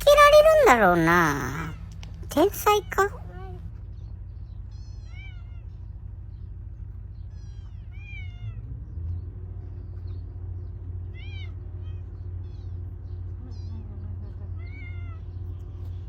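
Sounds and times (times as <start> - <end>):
kitten meowing: 4.7 - 5.6, 11.1 - 11.6.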